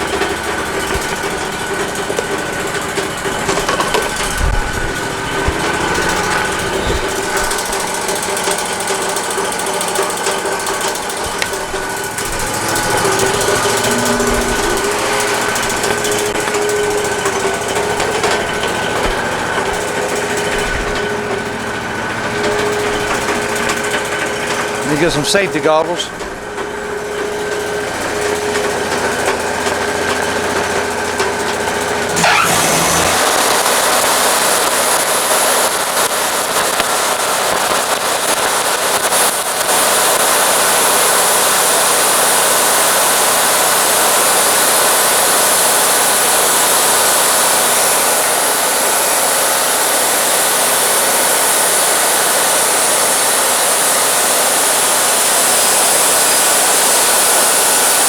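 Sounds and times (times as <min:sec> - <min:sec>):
band saw blade sawing log: 0:00.0 - 0:21.5, 0:22.3 - 0:26.2, 0:31.9 - 0:36.2
sawmill machine hum: 0:00.0 - 0:58.0.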